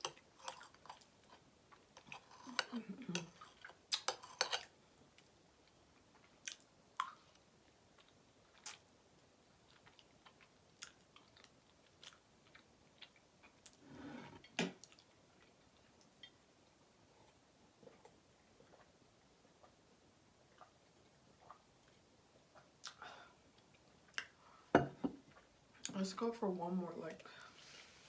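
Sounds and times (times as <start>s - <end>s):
person chewing: 0.0s - 7.4s, 8.0s - 8.9s, 9.6s - 16.4s, 17.3s - 19.8s, 20.4s - 24.4s.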